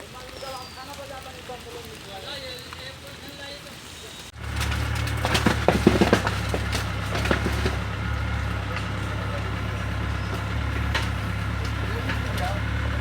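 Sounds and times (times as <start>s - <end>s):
bulldozer diesel engine running: 0.0s - 13.0s
bottles and cans crushed: 4.4s - 7.8s.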